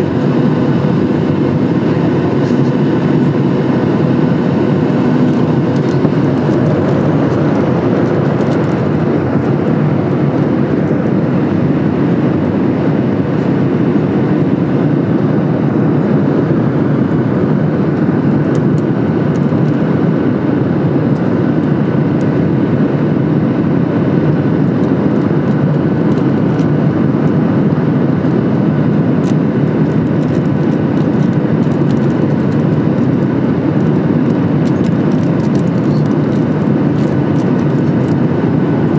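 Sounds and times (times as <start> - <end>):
faint steady whine tones: 0.0 - 20.6, 32.4 - 38.9
airflow rush in airplane cabin: 0.0 - 38.9
jet engines: 0.0 - 38.9.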